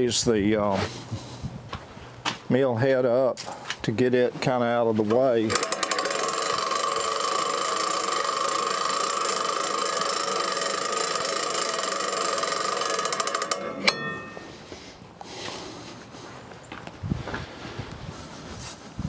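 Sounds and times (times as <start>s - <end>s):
machine clunk: 5.0s - 14.5s.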